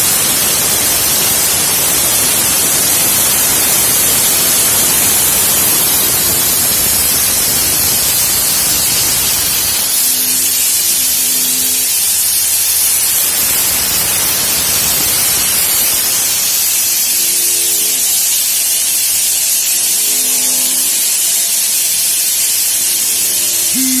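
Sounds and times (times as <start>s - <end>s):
milling machine hiss: 0.0s - 24.0s
faint machine tones: 23.7s - 24.0s.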